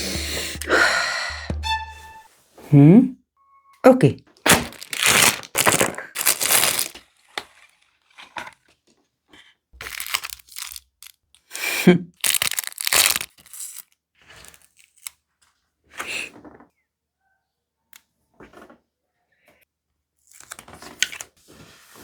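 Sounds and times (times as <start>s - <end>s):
packaging crinkling and tearing: 4.4s - 8.6s, 9.8s - 15.2s, 20.3s - 21.3s.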